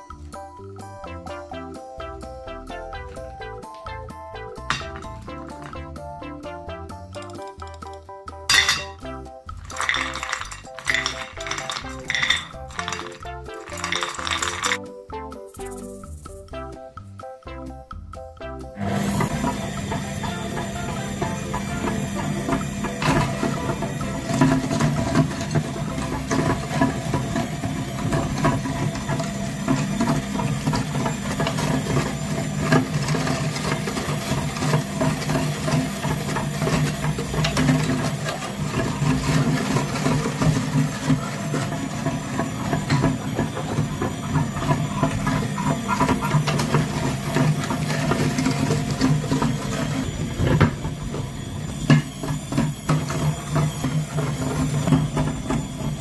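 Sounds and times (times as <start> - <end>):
crackling of material being crushed: 4.6 - 6.0, 7.1 - 14.9, 18.8 - 56.0
meat grinder motor humming: 9.6 - 14.8, 18.8 - 56.0.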